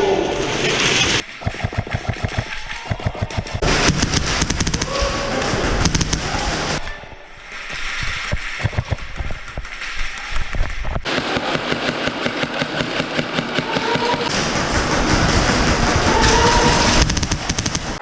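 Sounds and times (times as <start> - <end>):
airsoft gun rapid fire: 1.4 - 6.8, 11.0 - 18.0.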